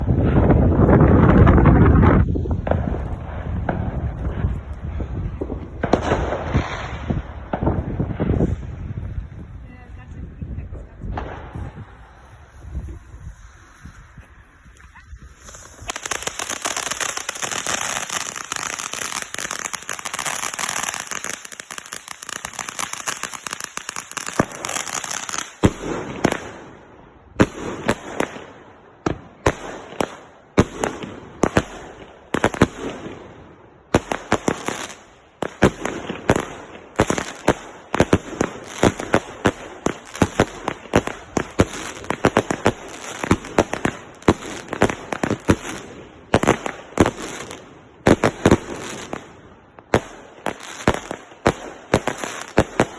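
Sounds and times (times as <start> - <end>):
firework bangs: 0.0 - 9.3, 10.8 - 52.9
fireworks crackling: 0.0 - 52.9.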